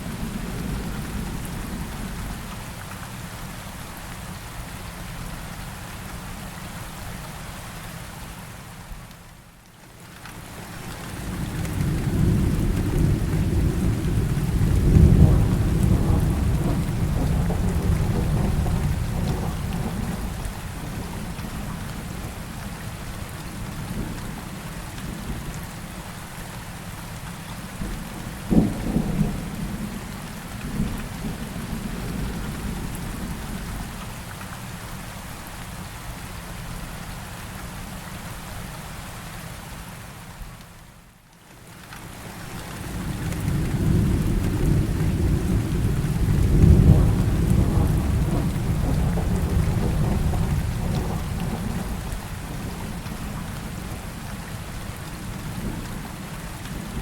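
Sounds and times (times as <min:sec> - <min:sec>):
steady rain: 0:00.0 - 0:57.0
rolling thunder: 0:11.3 - 0:22.4, 0:42.9 - 0:54.0
thunder clap: 0:11.7 - 0:20.4, 0:43.1 - 0:53.0.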